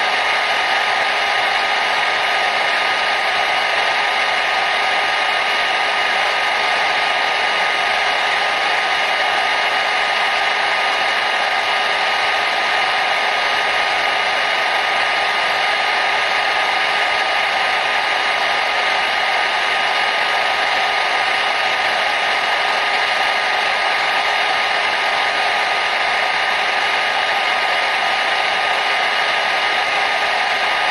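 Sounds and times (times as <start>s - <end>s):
hair dryer running: 0.0s - 30.9s.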